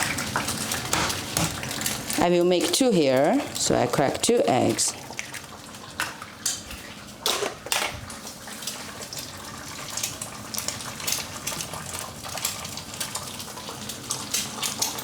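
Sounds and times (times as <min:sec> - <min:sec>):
eggs sizzling in oil: 0:00.0 - 0:15.0.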